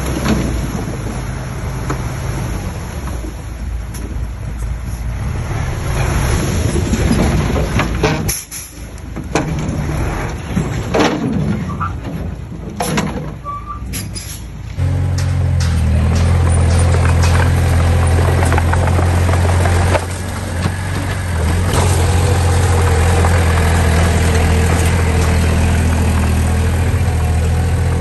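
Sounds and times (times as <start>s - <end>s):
machinery clanks and knocks: 6.8s - 28.0s
earthmoving machine engine: 14.7s - 28.0s.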